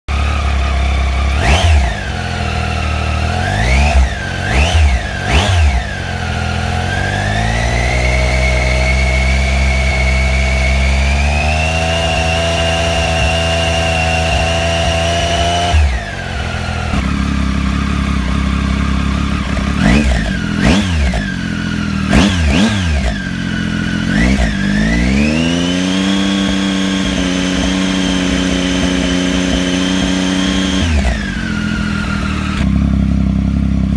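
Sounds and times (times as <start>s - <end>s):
motorcycle engine revving: 0.0s - 33.9s.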